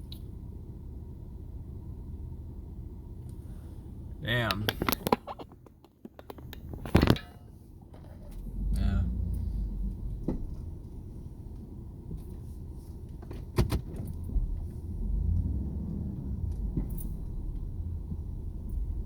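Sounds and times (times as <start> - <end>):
car driving rumble: 0.0 - 19.0
knocks and clunks: 4.7 - 11.0, 13.2 - 19.0.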